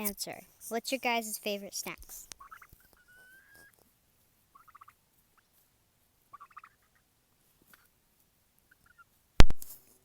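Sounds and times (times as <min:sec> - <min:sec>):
turkey gobbles: 0:02.3 - 0:03.8, 0:04.4 - 0:05.6, 0:06.2 - 0:07.9, 0:08.6 - 0:09.2.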